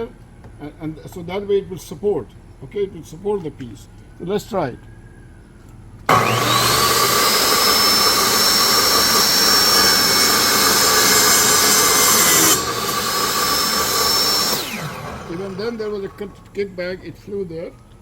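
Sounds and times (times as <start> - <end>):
saw ripping wood: 6.1 - 16.6
table saw motor whine: 6.1 - 17.5.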